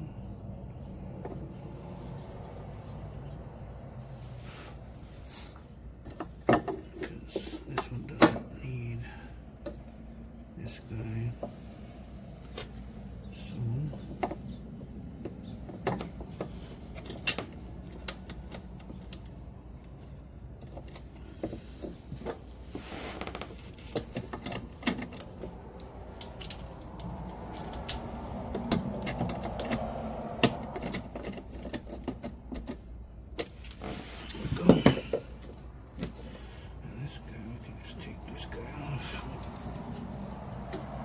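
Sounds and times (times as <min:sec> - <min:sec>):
low steady hum: 0:00.0 - 0:41.0
hand tools and parts clicking: 0:23.1 - 0:36.6, 0:38.5 - 0:41.0.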